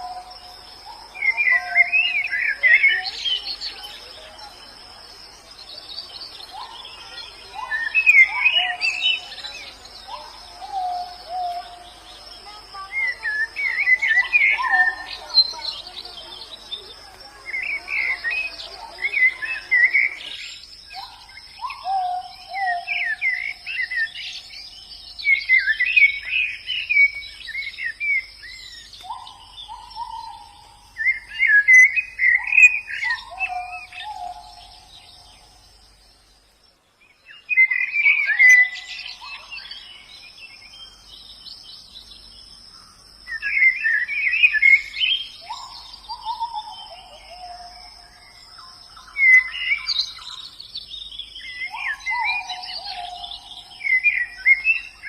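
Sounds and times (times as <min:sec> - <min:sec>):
birds twittering chirps: 0:00.0 - 0:55.0.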